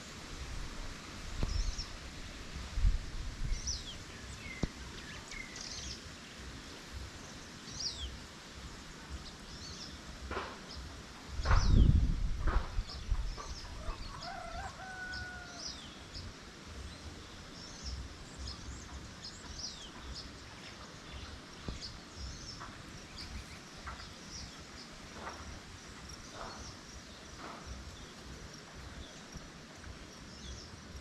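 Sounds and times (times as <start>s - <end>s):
wind rumble on microphone: 0.0s - 31.0s
small birds chirping: 1.4s - 2.7s, 3.4s - 31.0s
thump: 11.4s - 13.0s
rooster crowing: 13.8s - 15.8s.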